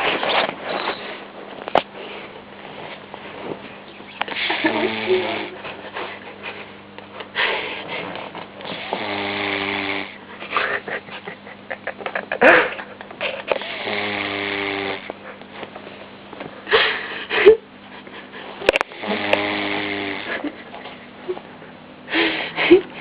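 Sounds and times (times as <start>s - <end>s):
puppy snoring: 4.3s - 5.6s, 8.6s - 10.2s, 13.4s - 15.1s, 18.7s - 20.4s.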